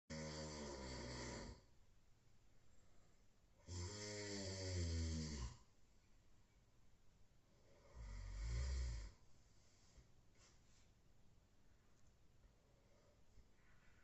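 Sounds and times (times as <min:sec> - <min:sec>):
person snoring: 0:00.1 - 0:01.7, 0:03.6 - 0:05.7, 0:07.7 - 0:09.2.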